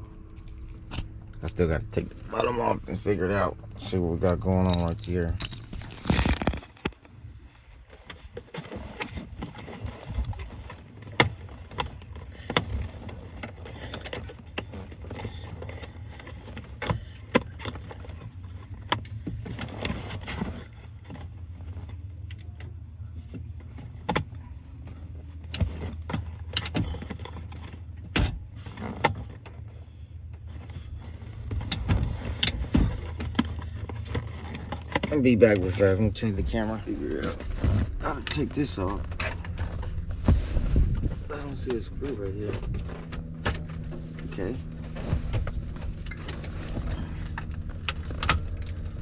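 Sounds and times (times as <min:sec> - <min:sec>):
steady low hum: 0:00.0 - 0:49.0
clicks and rattles of hands working: 0:04.3 - 0:40.3.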